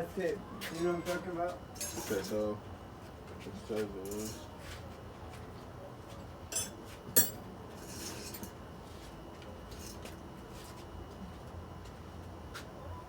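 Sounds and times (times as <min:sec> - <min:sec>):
metal hand tools clinking: 0:06.6 - 0:07.4.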